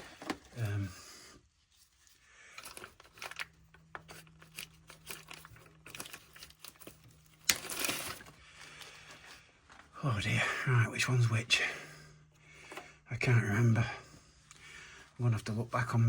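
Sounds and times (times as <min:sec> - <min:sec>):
crinkly plastic rustling: 0:00.0 - 0:00.9, 0:01.5 - 0:10.0.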